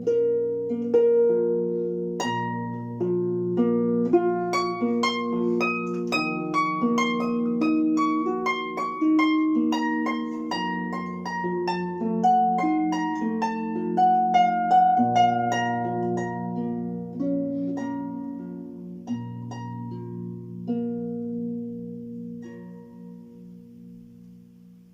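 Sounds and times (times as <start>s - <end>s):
plucked harp-like melody: 0.0s - 24.9s.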